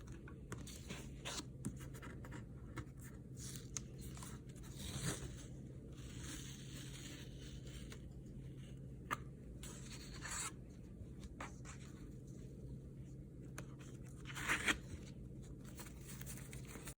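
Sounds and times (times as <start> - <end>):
faint low hum: 0.0 - 17.0.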